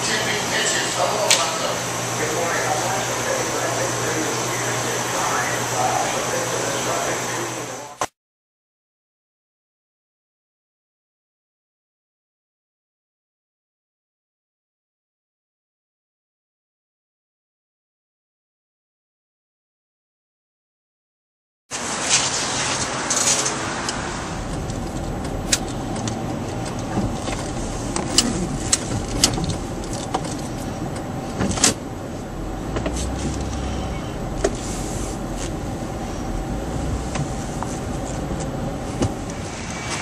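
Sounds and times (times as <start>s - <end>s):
motor vehicle rumble: 21.7s - 40.0s.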